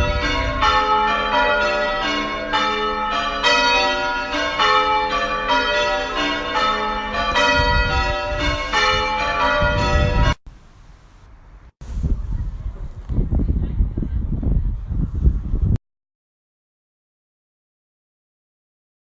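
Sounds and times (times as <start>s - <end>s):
church bells ringing: 0.0s - 10.4s.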